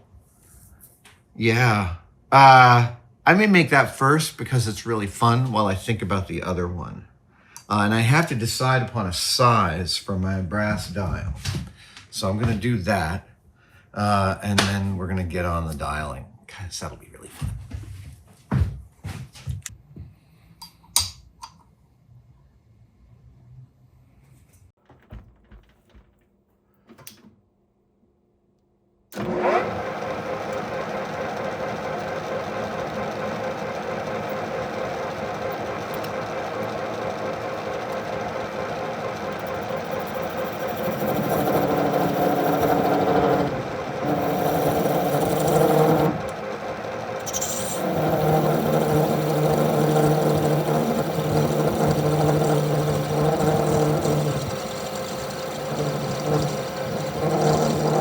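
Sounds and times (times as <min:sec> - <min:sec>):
metal lathe running: 0:29.2 - 0:58.0
steady hum: 0:29.2 - 0:58.0.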